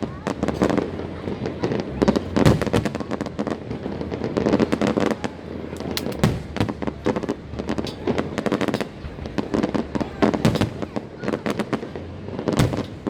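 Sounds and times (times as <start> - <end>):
fireworks bursting: 0.0 - 13.0.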